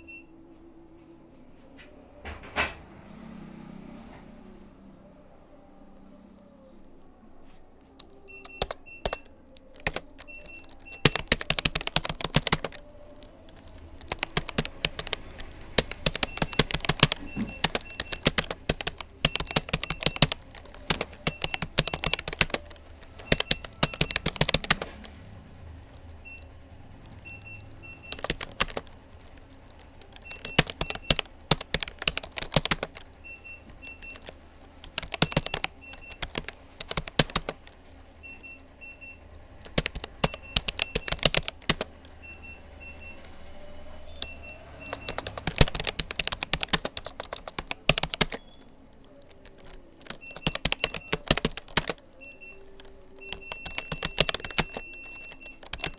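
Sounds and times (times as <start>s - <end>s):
computer keyboard key clicks: 8.0s - 25.0s, 27.0s - 33.1s, 33.7s - 37.8s, 39.6s - 41.9s, 44.2s - 48.4s, 49.1s - 55.9s.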